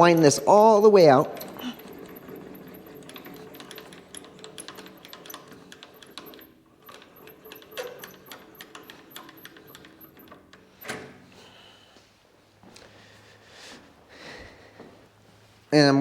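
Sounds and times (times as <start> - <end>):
metal lathe slide clicking: 0.0 - 11.1.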